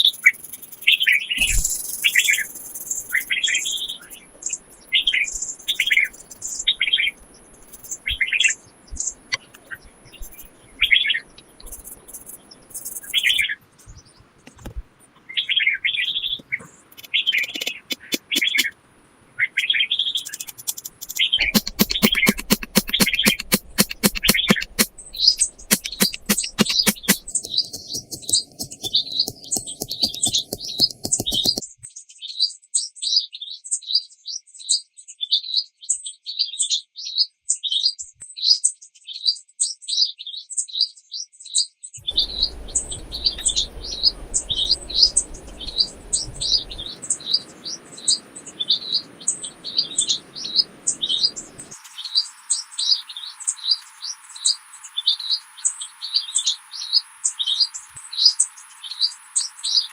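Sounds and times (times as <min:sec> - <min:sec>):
small birds chirping: 0:00.0 - 0:14.4, 0:15.0 - 0:59.9
sharp clicks or crackles: 0:20.2 - 0:31.6.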